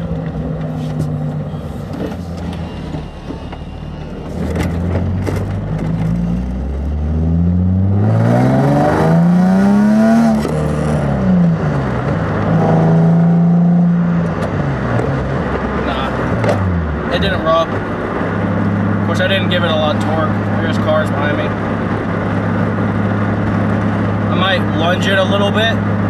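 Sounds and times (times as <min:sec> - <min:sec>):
car engine revving from cabin: 0:00.0 - 0:17.4.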